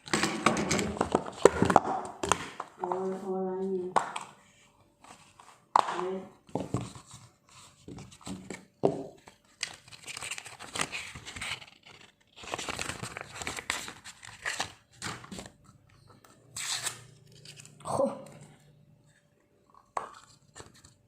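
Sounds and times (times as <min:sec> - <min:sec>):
packaging crinkling and tearing: 0:09.2 - 0:15.6, 0:16.5 - 0:17.8.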